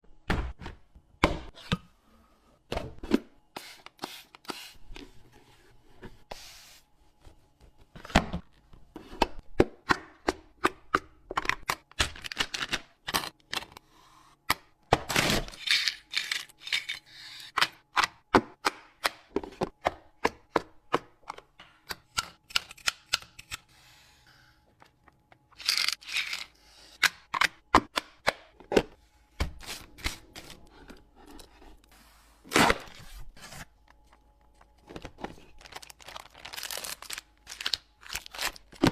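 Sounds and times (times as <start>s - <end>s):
packaging rustling: 32.6s - 38.9s.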